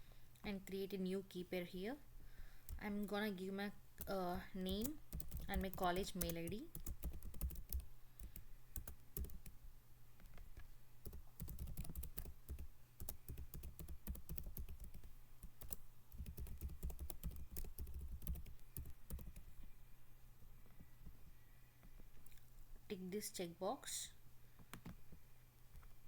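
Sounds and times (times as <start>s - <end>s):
low steady hum: 0.0s - 26.0s
laptop keyboard typing: 4.0s - 9.6s, 10.2s - 19.5s.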